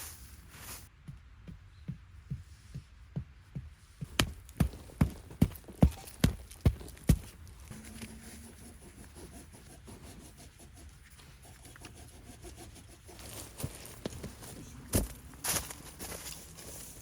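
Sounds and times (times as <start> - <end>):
soft rubbing and scraping: 5.6 - 17.0.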